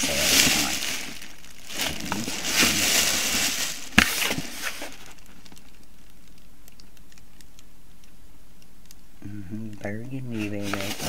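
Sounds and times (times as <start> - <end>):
packaging crinkling and rustling: 0.0 - 7.6, 10.2 - 11.0.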